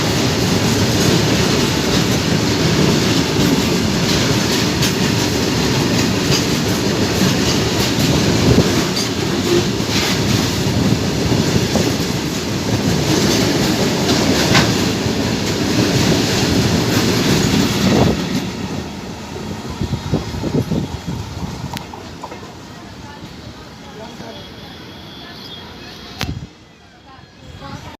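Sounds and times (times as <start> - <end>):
wheels clacking over rail joints: 0.0 - 18.8
train cars rumbling past: 0.0 - 27.9.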